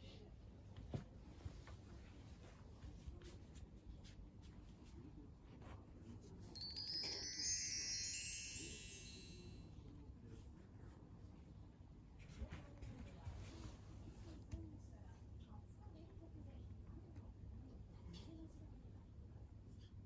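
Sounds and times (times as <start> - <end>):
shimmering bright chime tones: 6.6 - 9.6.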